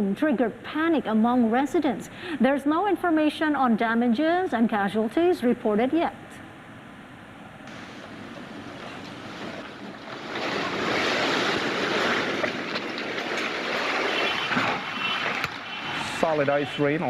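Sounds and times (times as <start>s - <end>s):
heavy rain and hail: 7.7s - 16.3s
hailstones ticking: 7.7s - 16.8s.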